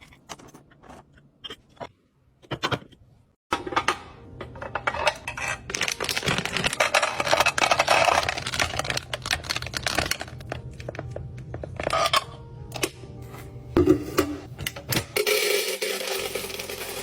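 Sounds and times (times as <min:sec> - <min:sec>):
kitchen items clattering: 0:00.0 - 0:12.6, 0:13.2 - 0:17.0.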